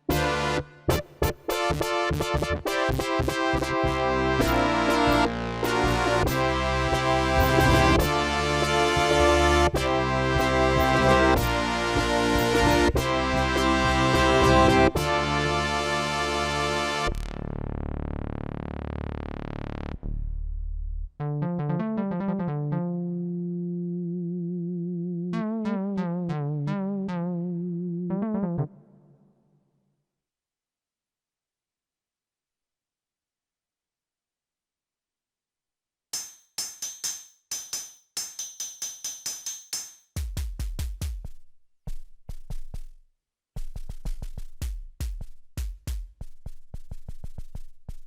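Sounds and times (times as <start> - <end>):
synthesizer chord: 0.1 - 1.0, 2.7 - 20.2, 21.2 - 29.2
synthesizer run of notes: 6.0 - 9.7, 13.7 - 28.9
deep booming bass hits: 17.1 - 21.2.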